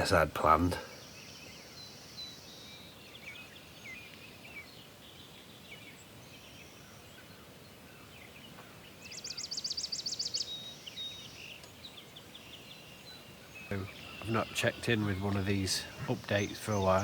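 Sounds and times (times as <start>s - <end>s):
faint outdoor background noise: 0.0s - 17.0s
small birds chirping and singing: 0.0s - 17.0s.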